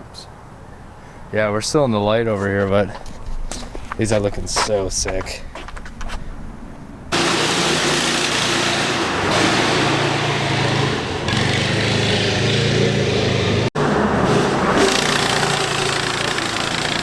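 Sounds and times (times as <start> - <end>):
go-kart engine running: 7.1 - 17.0.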